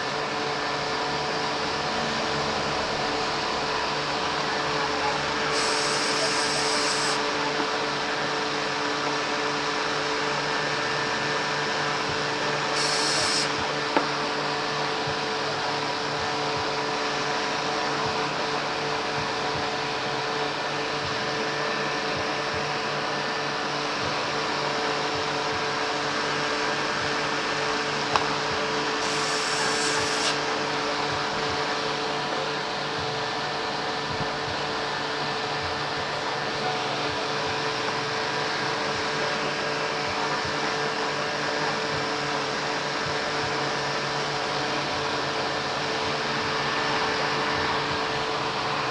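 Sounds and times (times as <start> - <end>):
short high hissing bursts: 5.5 - 7.2, 12.7 - 13.6.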